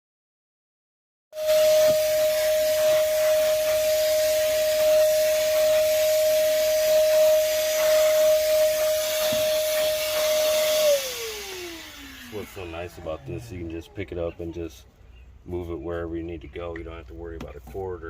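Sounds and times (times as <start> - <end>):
cordless vacuum running: 1.4 - 13.8.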